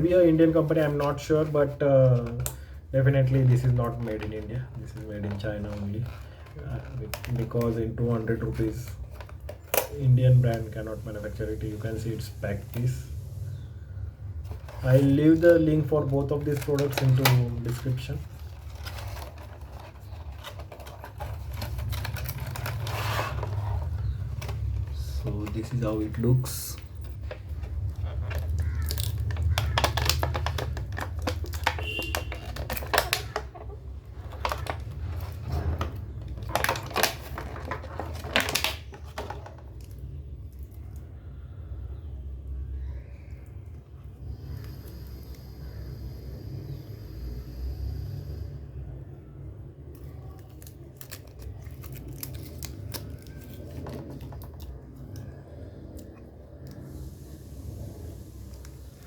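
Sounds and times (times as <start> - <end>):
plastic packaging crackling: 0.0 - 13.0, 14.4 - 40.9, 49.9 - 56.9.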